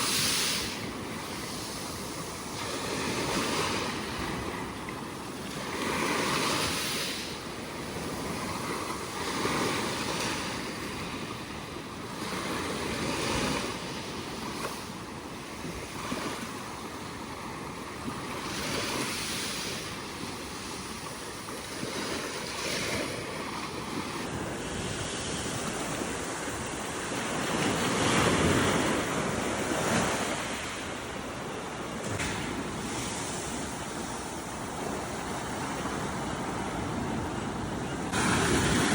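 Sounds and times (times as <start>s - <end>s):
surf washing on shore: 0.0s - 38.9s
wave breaking: 38.1s - 38.9s.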